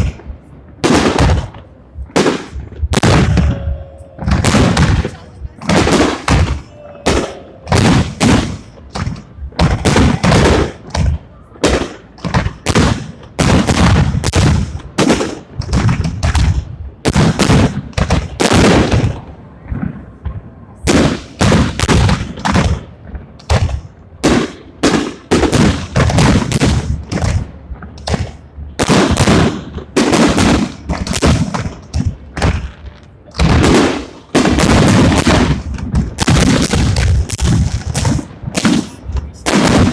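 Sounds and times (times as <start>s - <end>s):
fireworks bangs: 0.0s - 39.9s.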